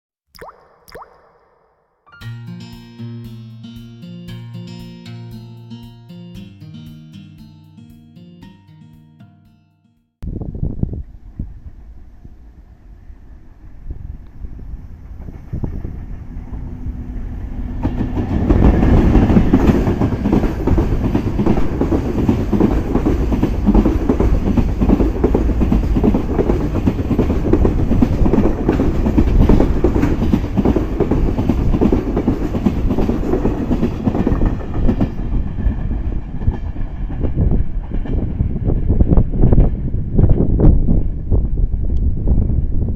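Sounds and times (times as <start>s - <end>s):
train wheels clattering over rails: 17.7s - 40.4s.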